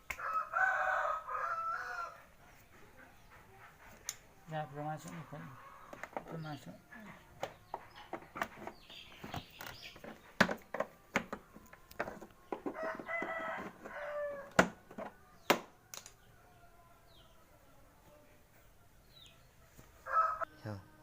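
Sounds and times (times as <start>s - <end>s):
rooster crowing: 0.1s - 2.3s, 12.6s - 14.6s, 20.0s - 21.0s.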